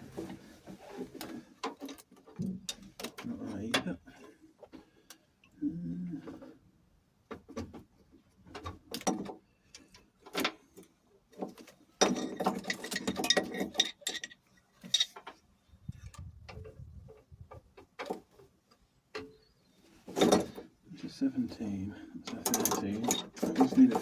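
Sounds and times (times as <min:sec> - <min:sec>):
metal spanners clinking: 0:12.0 - 0:15.2, 0:22.3 - 0:24.0.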